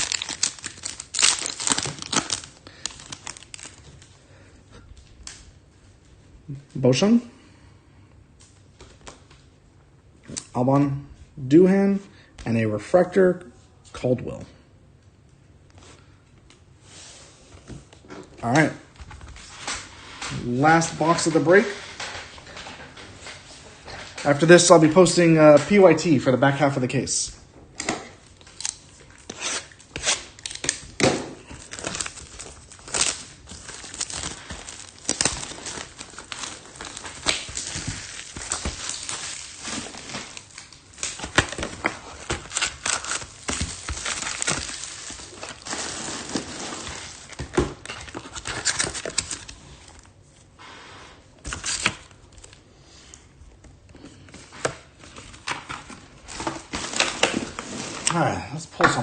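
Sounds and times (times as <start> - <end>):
plastic wrap and foil ripping: 0.0 - 4.1, 28.2 - 50.1, 51.4 - 52.6.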